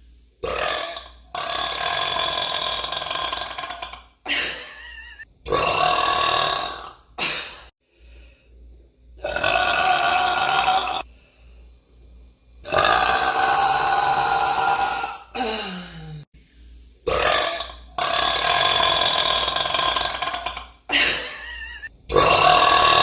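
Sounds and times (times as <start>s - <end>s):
woman burping: 12.7s - 16.3s, 17.1s - 23.0s.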